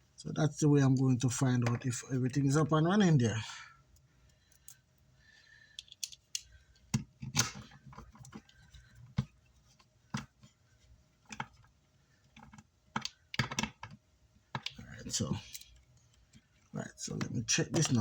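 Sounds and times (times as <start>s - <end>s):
tools clicking and tapping: 5.8s - 8.5s, 12.4s - 14.8s.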